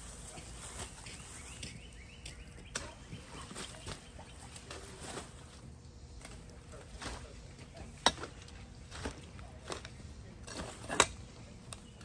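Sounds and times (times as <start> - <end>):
bird chirps: 0.8 - 4.6.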